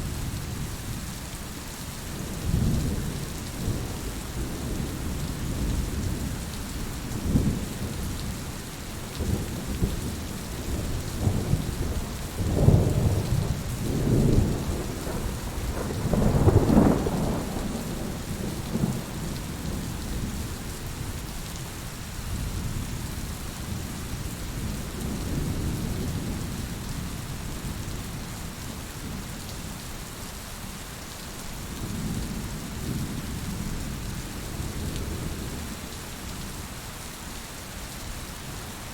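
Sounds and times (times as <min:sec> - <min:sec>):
steady rain: 0:00.0 - 0:38.9
rolling thunder: 0:09.2 - 0:20.4.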